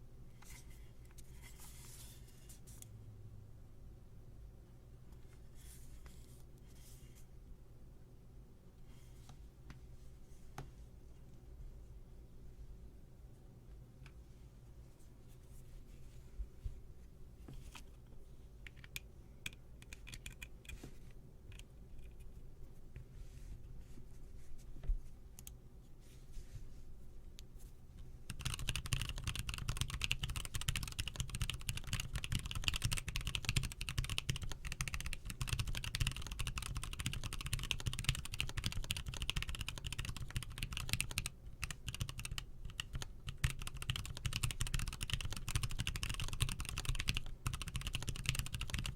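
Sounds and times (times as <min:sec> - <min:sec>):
mechanical keyboard typing: 0:19.8 - 0:20.5, 0:28.3 - 0:48.9.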